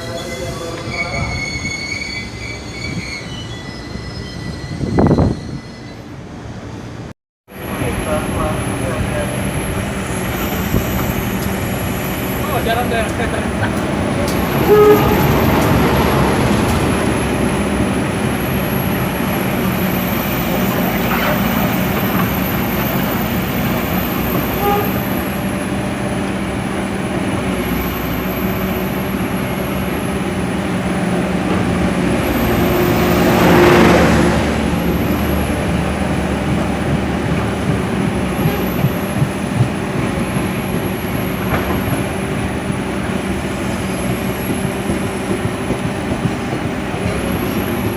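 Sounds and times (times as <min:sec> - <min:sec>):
train rumbling on rails: 0:00.0 - 0:47.9.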